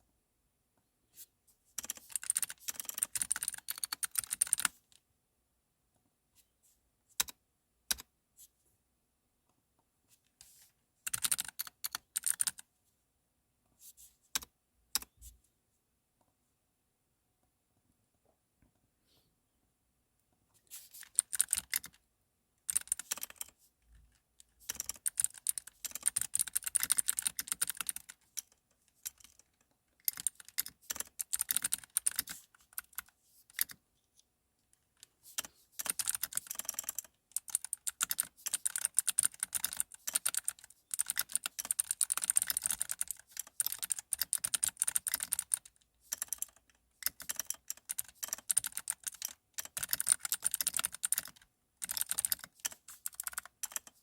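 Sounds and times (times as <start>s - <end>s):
typing on computer keyboard: 1.8s - 4.8s, 7.2s - 8.1s, 11.1s - 12.6s, 20.7s - 22.0s, 22.7s - 33.8s, 35.0s - 54.0s.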